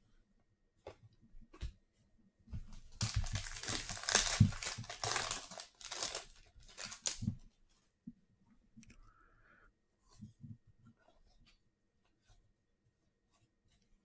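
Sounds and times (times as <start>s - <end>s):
foil wrapper tearing and crinkling: 3.0s - 7.3s.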